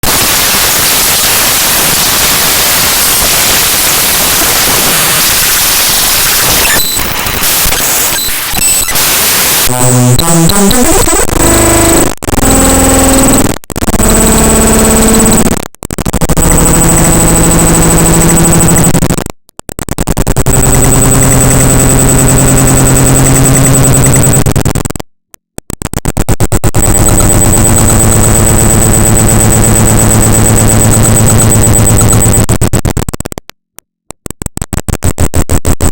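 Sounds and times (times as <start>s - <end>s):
hiss-like static: 0.1s - 10.0s
buzzy stepping tones: 9.0s - 15.5s.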